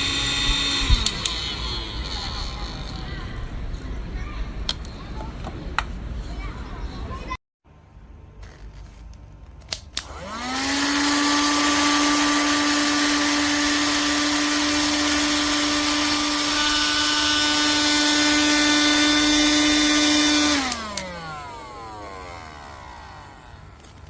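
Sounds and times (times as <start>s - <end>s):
handheld vacuum cleaner motor whine: 0.0s - 3.5s, 10.0s - 24.0s.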